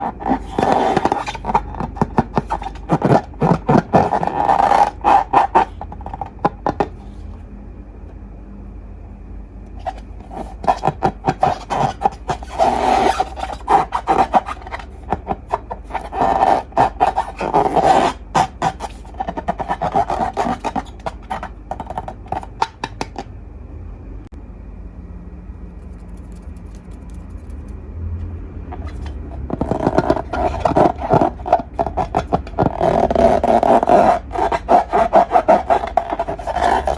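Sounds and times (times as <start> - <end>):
slime crackling and scraping: 0.0 - 7.3, 9.8 - 23.2, 28.7 - 36.9.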